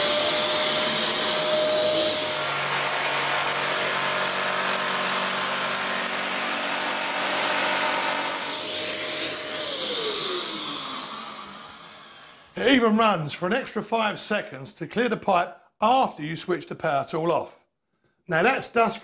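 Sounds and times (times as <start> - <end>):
motor winding down: 0.0 - 12.6
power tool working wood: 0.0 - 12.6
wet and dry vacuum running: 0.0 - 12.6.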